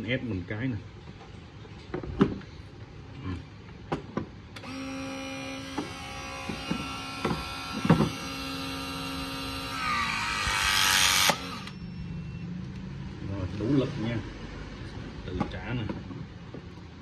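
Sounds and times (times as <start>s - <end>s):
electric hydraulic pump running: 4.6s - 11.8s.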